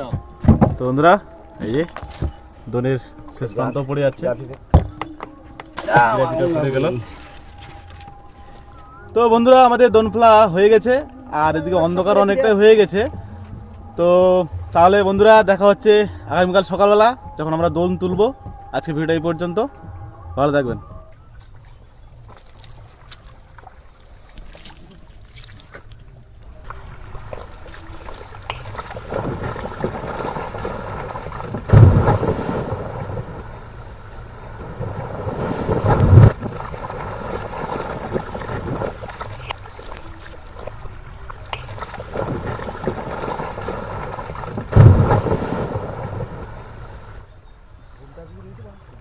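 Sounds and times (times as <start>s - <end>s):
thin steady high tone: 0.0s - 25.2s
water and wind noise: 0.0s - 49.0s.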